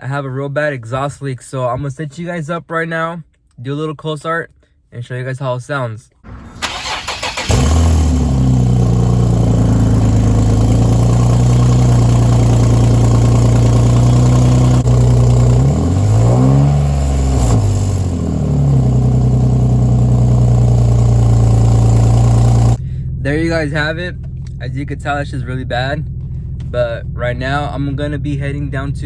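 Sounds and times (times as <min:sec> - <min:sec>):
starter motor cranking: 0:06.3 - 0:14.8
engine revving: 0:06.3 - 0:22.8
car engine idling: 0:06.3 - 0:29.0
man talking: 0:23.2 - 0:26.0, 0:26.7 - 0:29.0.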